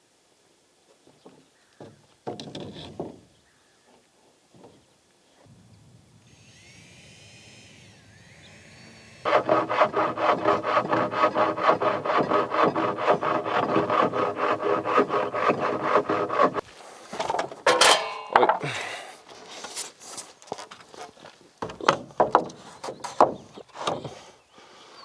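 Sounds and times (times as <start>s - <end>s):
faint birdsong: 1.0s - 2.2s, 3.3s - 9.3s, 21.2s - 25.0s
handsaw cutting wood: 6.2s - 17.2s.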